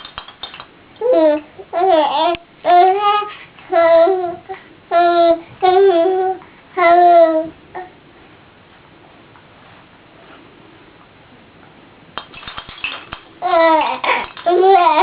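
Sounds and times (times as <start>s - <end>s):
baby cooing: 13.4s - 15.0s.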